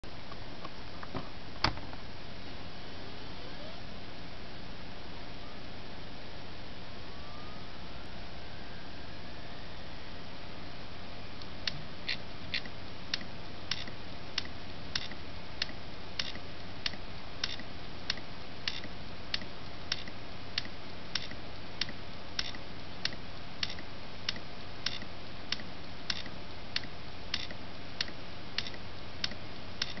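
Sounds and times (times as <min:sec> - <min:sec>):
spinning hard drive hum: 0:00.0 - 0:30.0
hard drive heads clicking: 0:11.7 - 0:30.0.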